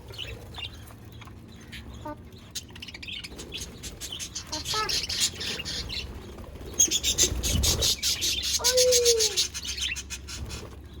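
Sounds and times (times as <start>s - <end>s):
budgerigars chirping: 1.6s - 6.1s, 6.7s - 10.6s.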